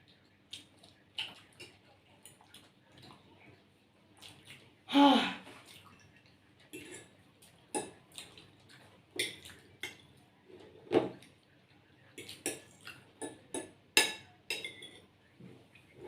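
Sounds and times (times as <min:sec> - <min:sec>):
cutlery clinking against plates: 0:06.7 - 0:08.4, 0:09.1 - 0:11.2, 0:12.2 - 0:15.1.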